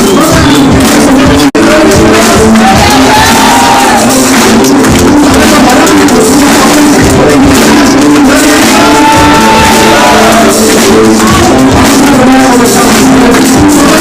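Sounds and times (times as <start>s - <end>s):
loud compressed music: 0.0s - 14.0s.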